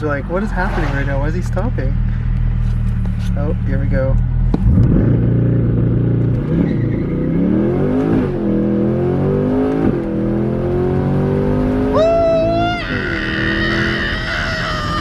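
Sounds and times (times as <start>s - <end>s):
car engine at full throttle: 0.0s - 15.0s.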